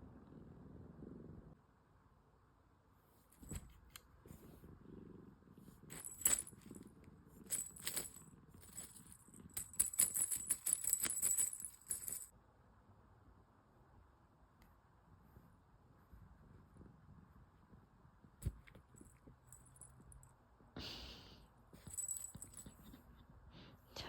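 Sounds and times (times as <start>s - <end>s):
kitten purring: 0.0s - 1.8s, 3.4s - 12.3s
rapid bright clicks and rattling: 5.9s - 12.3s.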